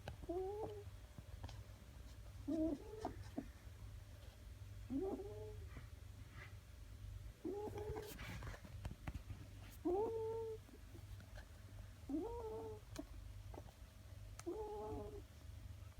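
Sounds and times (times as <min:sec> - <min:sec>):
puppy whiny snore: 0:02.4 - 0:03.5, 0:04.9 - 0:05.7, 0:12.1 - 0:12.8, 0:14.4 - 0:15.2.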